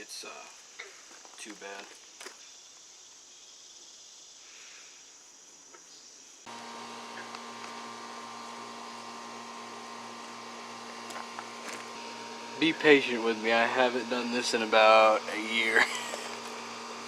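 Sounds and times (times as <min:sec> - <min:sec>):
faint hiss: 0:00.0 - 0:06.5
mechanical hum with whirr: 0:06.5 - 0:17.0.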